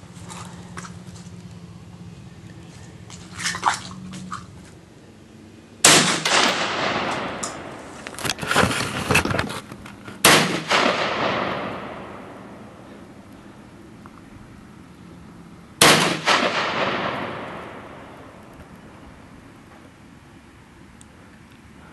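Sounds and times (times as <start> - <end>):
rifle shots with echo: 5.8 - 7.9, 10.2 - 12.9, 15.8 - 18.5.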